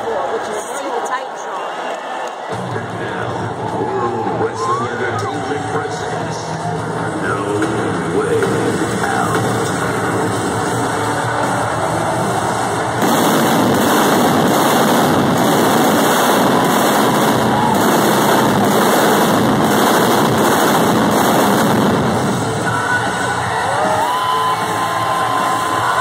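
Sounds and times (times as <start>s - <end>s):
pyrotechnics roaring: 6.6s - 24.2s.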